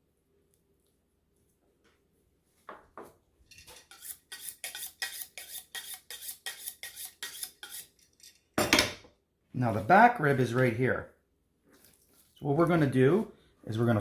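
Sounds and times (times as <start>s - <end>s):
knife blade scraping: 3.5s - 8.4s.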